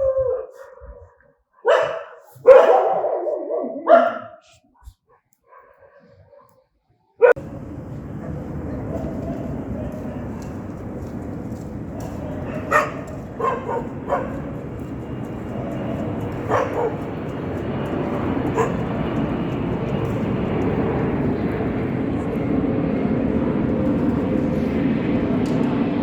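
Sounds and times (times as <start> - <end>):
dog barking: 0.3 - 4.4, 5.1 - 7.4, 12.0 - 14.5, 16.3 - 17.2, 18.2 - 19.0
steady background noise: 7.3 - 26.0.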